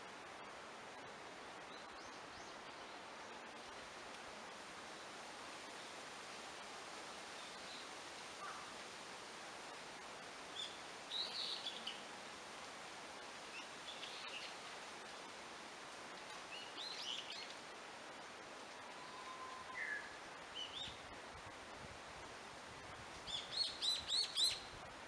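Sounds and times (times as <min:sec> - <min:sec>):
forest ambience hiss: 0:00.0 - 0:25.0.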